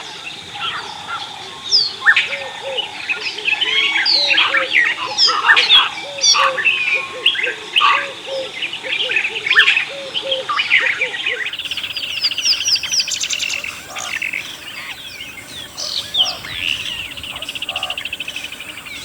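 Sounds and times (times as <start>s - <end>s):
wild birds chirping: 0.0s - 19.0s
fast buzzy bird trill: 11.4s - 19.0s.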